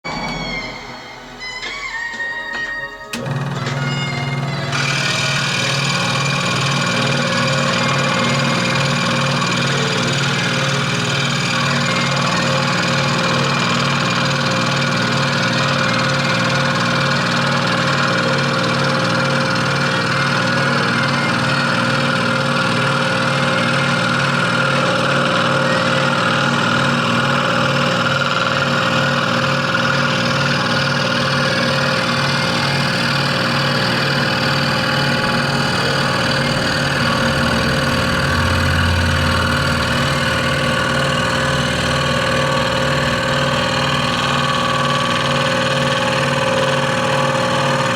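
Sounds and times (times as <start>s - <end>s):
scroll saw running: 3.1s - 47.9s
deeper hum: 30.8s - 47.8s.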